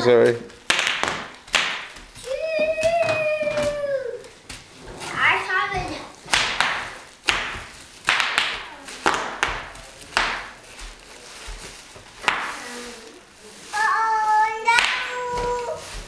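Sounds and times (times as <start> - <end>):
bubble wrap popping: 0.4 - 4.7, 5.9 - 16.0
child's voice: 2.2 - 4.3, 5.1 - 6.2, 12.5 - 16.0.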